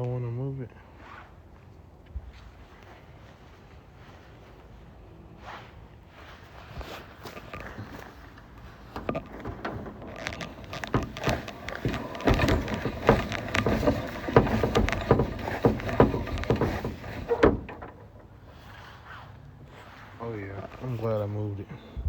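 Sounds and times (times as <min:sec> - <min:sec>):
work light clattering: 0:08.4 - 0:18.6.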